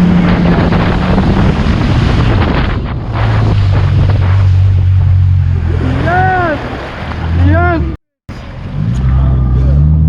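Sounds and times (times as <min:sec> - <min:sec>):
jet ski engine running: 0:00.0 - 0:07.9
wind buffeting microphone: 0:00.0 - 0:07.9
water splashing: 0:00.0 - 0:08.0.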